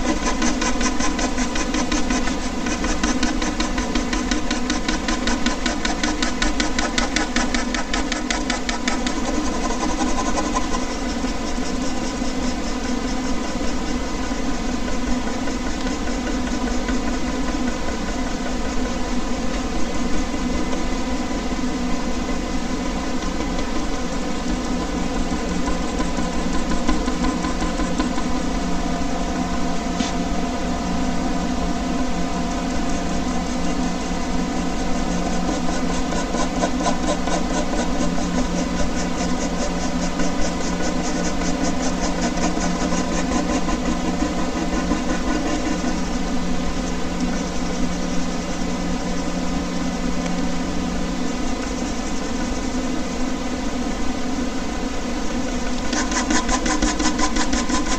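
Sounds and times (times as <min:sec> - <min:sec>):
pen scratching on paper: 0:00.0 - 0:21.3, 0:22.1 - 0:28.6, 0:32.6 - 0:46.2, 0:55.5 - 0:57.9
air conditioner humming: 0:08.9 - 0:57.9.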